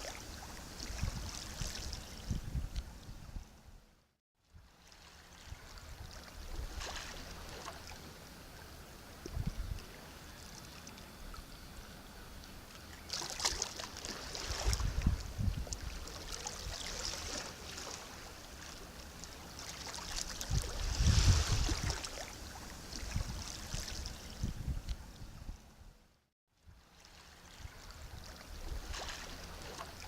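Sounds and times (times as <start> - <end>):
small waves lapping: 0.0 - 2.3, 4.6 - 24.5, 26.8 - 30.0
wave surges with water thuds: 13.3 - 24.1.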